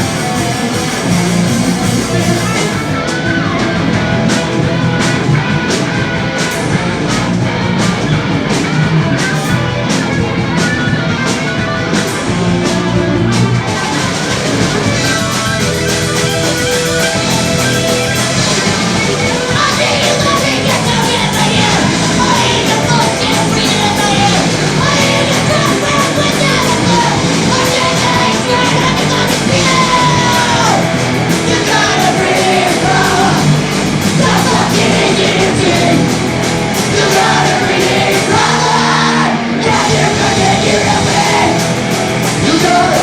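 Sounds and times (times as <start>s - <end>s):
punk rock band playing live: 0.0s - 43.0s.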